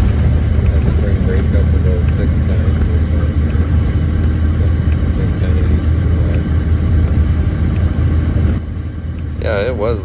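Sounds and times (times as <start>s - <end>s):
diesel truck engine rumbling: 0.0s - 10.0s.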